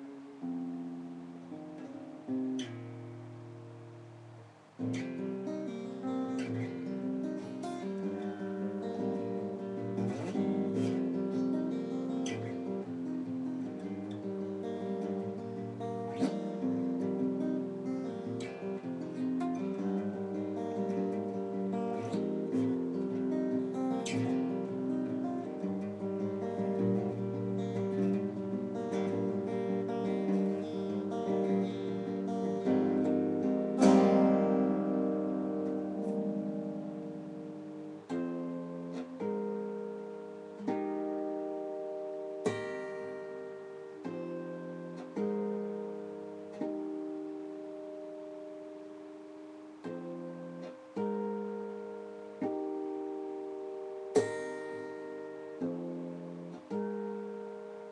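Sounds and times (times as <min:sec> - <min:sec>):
acoustic guitar playing: 0:00.0 - 0:57.9.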